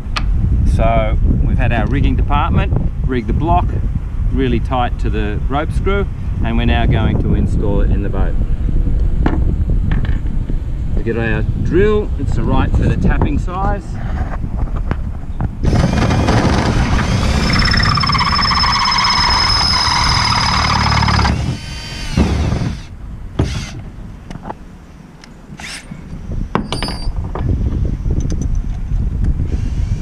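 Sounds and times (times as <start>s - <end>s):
electric drill whining: 15.6s - 23.8s.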